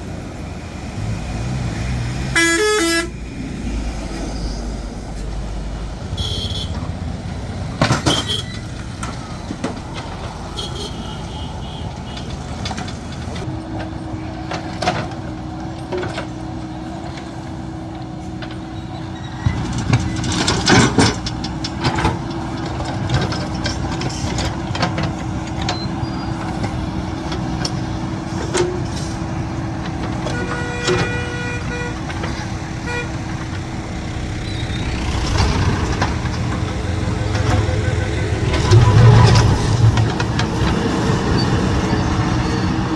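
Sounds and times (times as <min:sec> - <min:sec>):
diesel engine running: 0:00.0 - 0:42.9
metallic clanks and knocks: 0:19.4 - 0:29.2.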